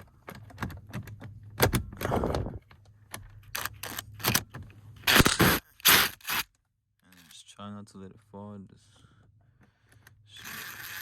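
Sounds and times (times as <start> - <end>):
impact driver rapid clicks: 5.1 - 6.4.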